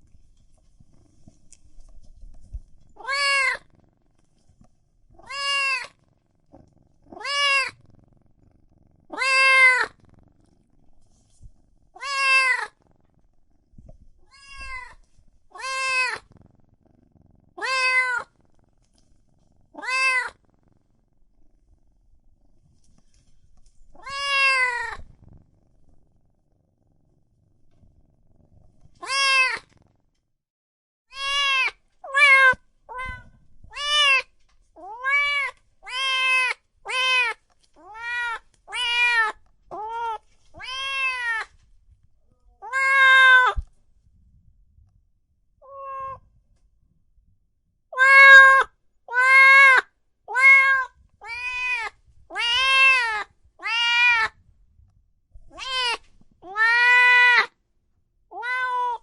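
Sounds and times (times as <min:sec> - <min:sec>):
cat meowing: 0:03.0 - 0:03.7, 0:05.2 - 0:06.0, 0:07.1 - 0:07.8, 0:09.1 - 0:10.0, 0:12.0 - 0:12.8, 0:14.2 - 0:16.3, 0:17.6 - 0:18.3, 0:19.8 - 0:20.4, 0:24.0 - 0:25.1, 0:29.0 - 0:29.7, 0:31.1 - 0:41.6, 0:42.6 - 0:43.7, 0:45.6 - 0:46.3, 0:47.9 - 0:54.4, 0:55.5 - 0:57.6, 0:58.3 - 0:59.0.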